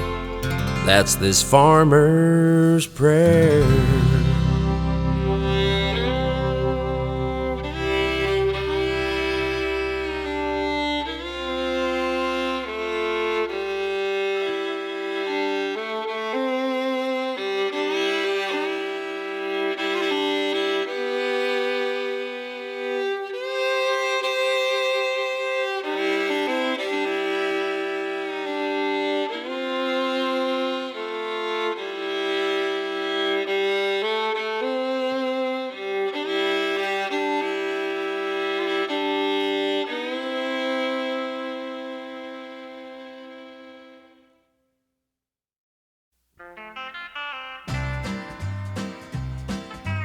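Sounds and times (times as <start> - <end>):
chordal backing: 0.0 - 14.5
fiddle playing sustained notes: 0.0 - 44.5, 46.4 - 50.0.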